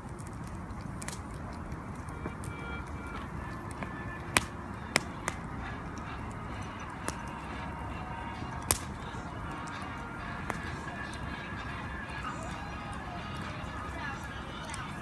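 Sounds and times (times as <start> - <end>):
bamboo cracking and popping: 0.0 - 11.2
fire rushing: 0.0 - 15.0.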